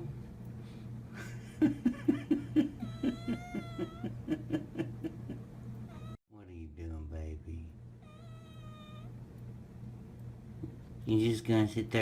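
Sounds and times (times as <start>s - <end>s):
cat meowing: 2.8s - 4.0s, 5.9s - 6.2s, 8.0s - 9.1s.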